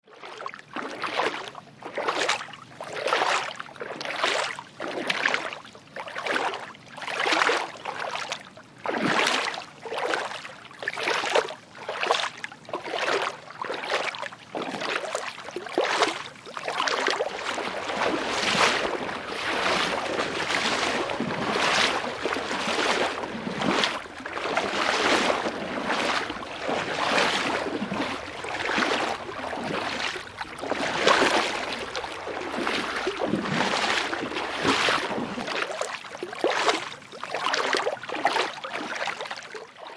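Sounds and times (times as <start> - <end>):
water flowing and splashing: 14.6 - 39.4.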